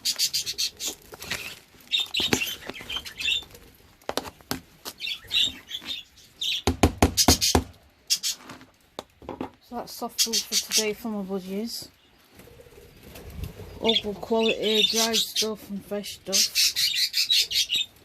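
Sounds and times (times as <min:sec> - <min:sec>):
budgerigars chirping and chattering: 0:00.0 - 0:03.6, 0:05.0 - 0:08.4, 0:09.9 - 0:11.9, 0:13.6 - 0:18.0.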